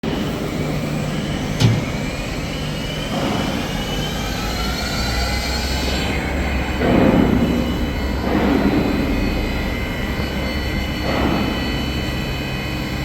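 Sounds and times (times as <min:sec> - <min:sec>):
machine running steadily: 0:00.0 - 0:13.0
sharp click: 0:01.6 - 0:02.2.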